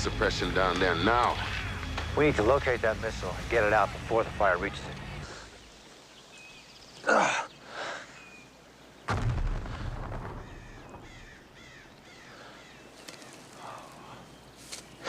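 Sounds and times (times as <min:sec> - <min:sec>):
faint bird calls: 0:05.2 - 0:09.1, 0:10.2 - 0:15.0
explosion with deep rumble: 0:09.1 - 0:11.3.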